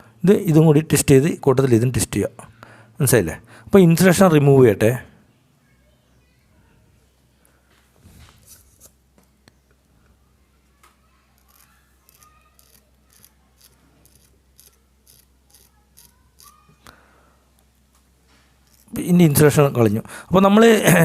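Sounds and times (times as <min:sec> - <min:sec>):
blade scraping wire insulation: 0:11.4 - 0:16.6, 0:18.6 - 0:19.0.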